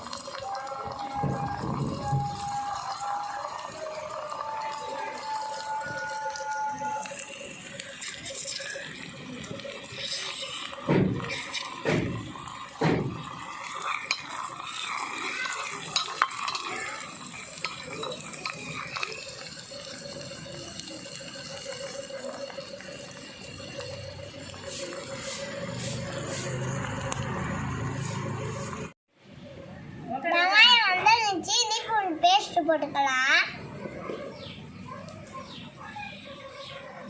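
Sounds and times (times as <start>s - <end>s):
onions frying in oil: 0.0s - 29.0s
sharp knocks on pan: 12.8s - 13.2s
spoon scraping and clinking pan: 13.6s - 19.4s.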